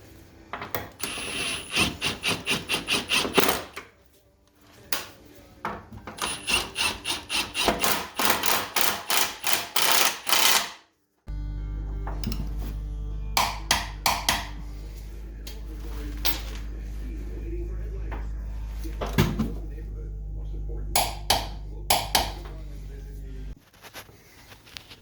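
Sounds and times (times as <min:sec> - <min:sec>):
impact wrench hammering: 0:01.0 - 0:03.8, 0:06.2 - 0:10.8, 0:13.4 - 0:14.6, 0:21.0 - 0:22.5
steady low hum: 0:11.3 - 0:23.6.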